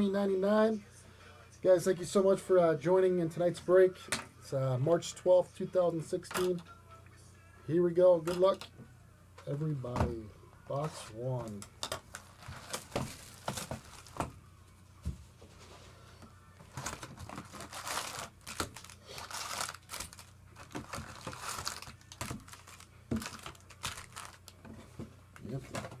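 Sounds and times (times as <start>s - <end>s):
low electrical hum: 0.0s - 26.0s
plastic wrapping crinkling: 11.4s - 14.3s, 16.6s - 26.0s.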